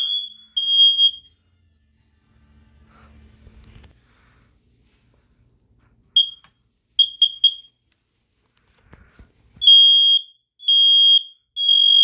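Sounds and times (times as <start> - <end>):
smoke alarm beeping: 0.0 - 1.4, 6.2 - 7.8, 9.6 - 12.0
smoke alarm chirps: 0.0 - 1.4, 6.2 - 7.8, 9.6 - 12.0.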